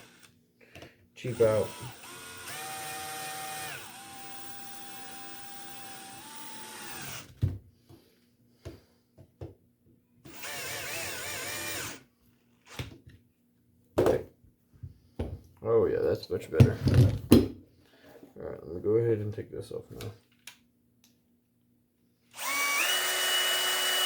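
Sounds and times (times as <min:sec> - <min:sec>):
power tool motor running: 0:00.0 - 0:00.3, 0:01.2 - 0:07.3, 0:10.3 - 0:12.0, 0:22.3 - 0:24.0.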